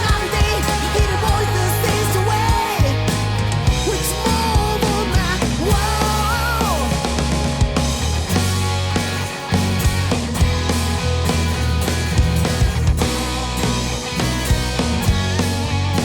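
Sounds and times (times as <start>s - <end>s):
instrumental rock band music: 0.0s - 16.0s.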